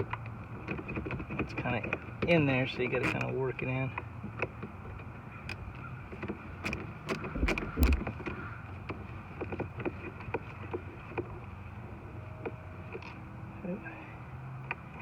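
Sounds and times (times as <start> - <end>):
louder knocks: 7.2 - 8.1.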